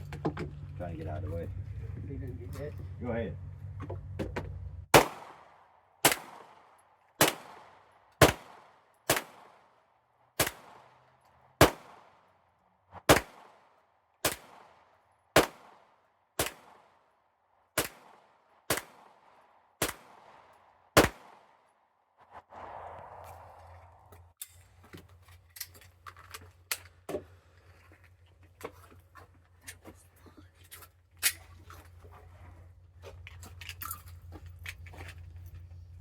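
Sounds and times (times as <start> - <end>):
gunshots with echo: 4.9 - 9.7, 10.4 - 11.0, 11.6 - 12.2, 13.0 - 17.0, 17.8 - 21.6.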